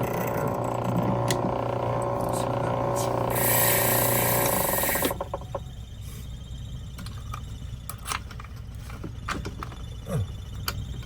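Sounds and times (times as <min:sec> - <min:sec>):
key machine cutting a key: 0:00.0 - 0:05.3.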